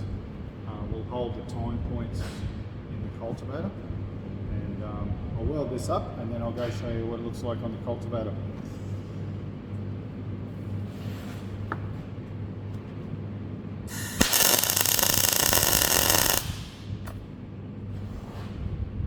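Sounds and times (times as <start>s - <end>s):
steady low hum: 0.0s - 19.0s
arc welding hiss: 13.9s - 16.9s.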